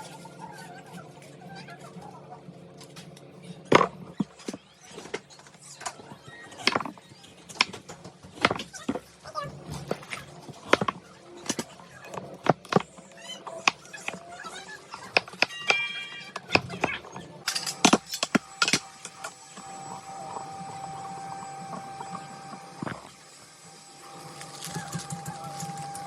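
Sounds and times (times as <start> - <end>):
snack trays clicking and knocking: 5.8 - 9.1, 9.8 - 14.3, 24.3 - 26.0.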